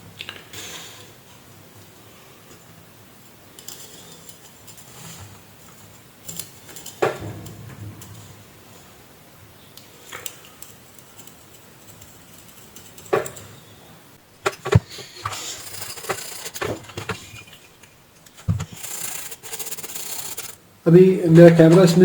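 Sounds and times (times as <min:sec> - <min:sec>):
tools and small parts clicking: 0:03.5 - 0:08.2, 0:09.8 - 0:13.6, 0:14.4 - 0:20.6.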